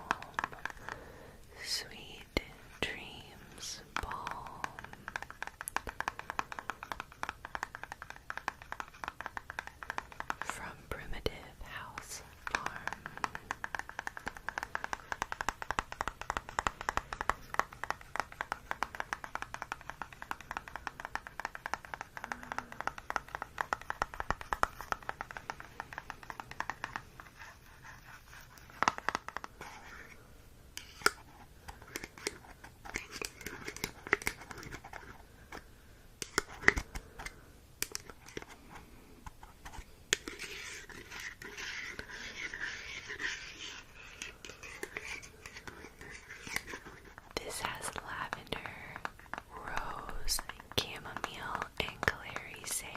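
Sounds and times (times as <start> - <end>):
taps and scrapes: 0.0 - 52.9
fast scratching: 38.1 - 48.0.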